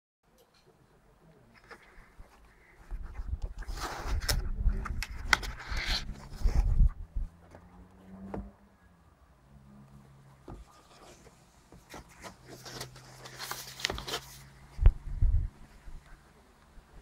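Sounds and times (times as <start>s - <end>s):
packaging rustling and scraping: 1.6s - 6.9s, 10.6s - 14.6s.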